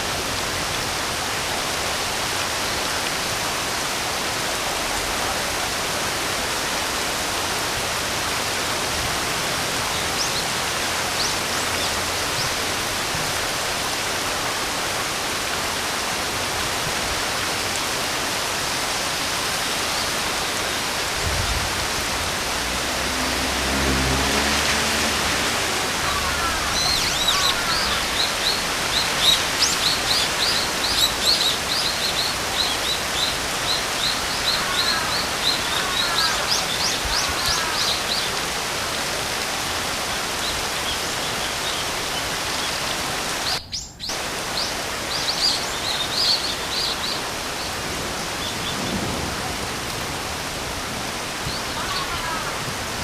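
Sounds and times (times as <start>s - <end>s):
steady rain hiss: 0.0s - 53.0s
birds chirping: 25.7s - 38.4s, 40.4s - 49.2s, 51.2s - 52.7s.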